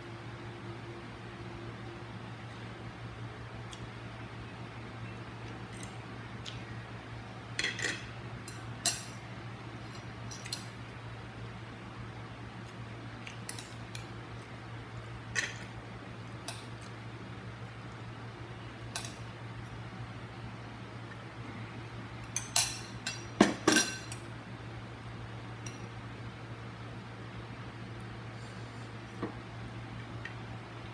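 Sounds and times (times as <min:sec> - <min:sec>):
steady low hum: 0:00.0 - 0:30.9
cutlery clinking on a plate: 0:22.4 - 0:24.2.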